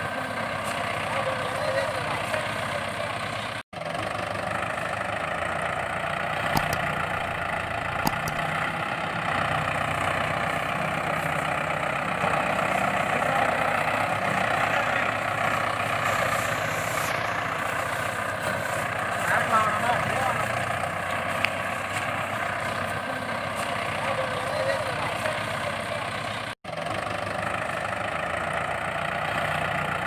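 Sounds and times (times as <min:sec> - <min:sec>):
motor running steadily: 0:04.9 - 0:08.6.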